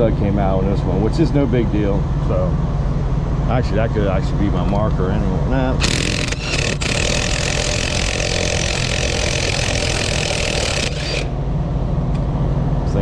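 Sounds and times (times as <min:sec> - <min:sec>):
air impact wrench whirring: 0:05.8 - 0:11.4.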